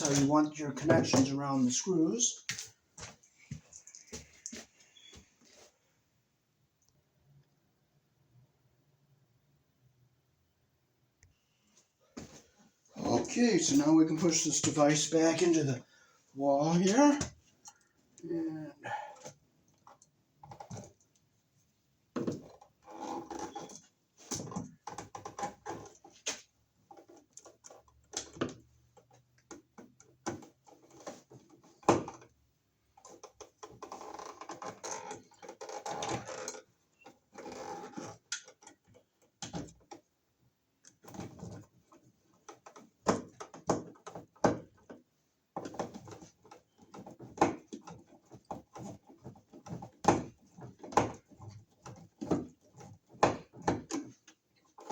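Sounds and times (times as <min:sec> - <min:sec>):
clicks knocks and scraping: 0:00.0 - 0:05.7, 0:19.2 - 0:21.3, 0:22.1 - 0:40.2, 0:40.8 - 0:54.9.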